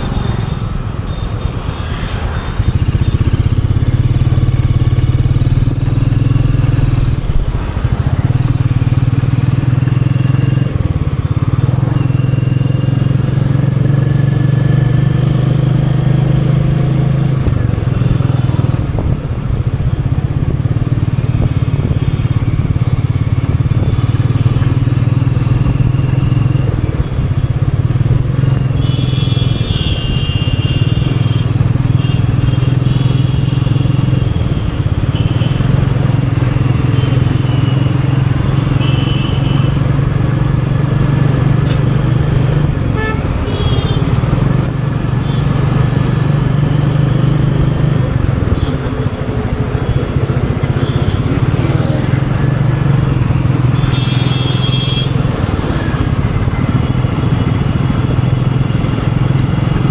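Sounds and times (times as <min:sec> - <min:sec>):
motorcycle engine and exhaust running: 0:00.0 - 0:59.9.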